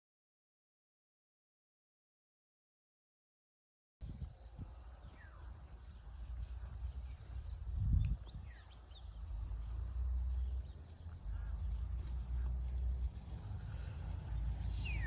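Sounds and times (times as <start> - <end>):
low uneven rumble: 4.4 - 15.0
faint bird chirps: 13.7 - 15.0.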